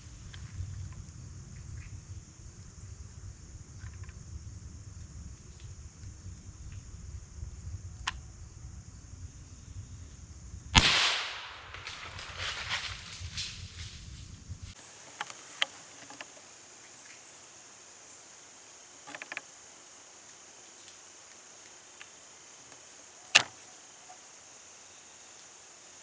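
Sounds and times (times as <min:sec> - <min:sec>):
high insect hum: 0:00.0 - 0:26.0
small clicks and ticks: 0:14.8 - 0:17.2, 0:18.9 - 0:24.2
sharp click: 0:23.3 - 0:23.7.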